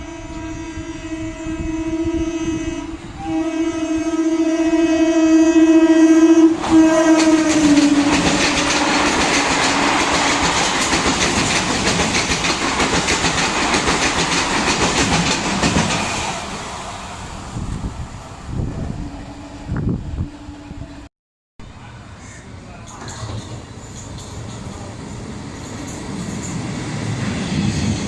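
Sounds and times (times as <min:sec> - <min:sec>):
train horn: 0:00.0 - 0:09.0
train wheels clattering over rail joints: 0:07.0 - 0:16.3, 0:22.9 - 0:26.7.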